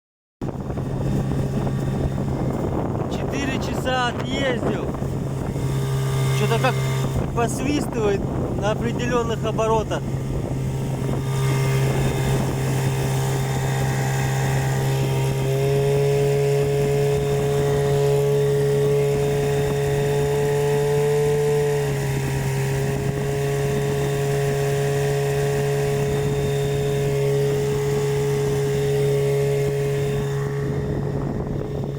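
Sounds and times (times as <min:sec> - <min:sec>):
outboard motor running: 0:00.4 - 0:31.9.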